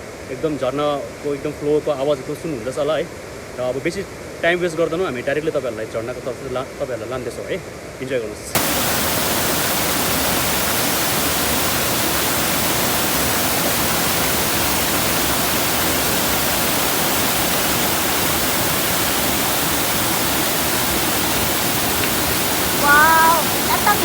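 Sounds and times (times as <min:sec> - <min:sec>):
waterfall rushing: 0:08.6 - 0:24.0.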